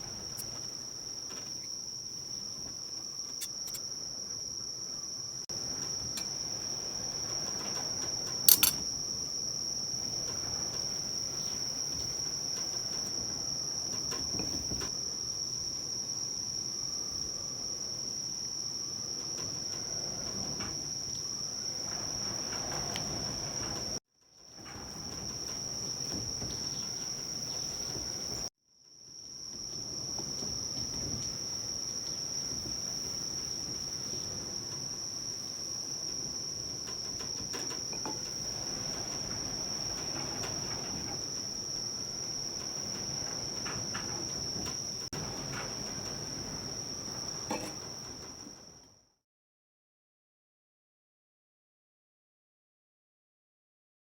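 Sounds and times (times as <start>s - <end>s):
high-pitched insect chorus: 0.0s - 24.0s, 25.1s - 28.5s
sharp click: 8.5s - 8.8s.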